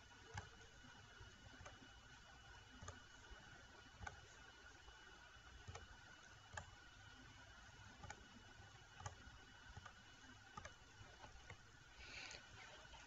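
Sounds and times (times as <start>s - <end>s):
faint mouse clicks: 2.6s - 3.2s, 5.6s - 6.8s, 7.9s - 8.3s, 9.0s - 11.6s.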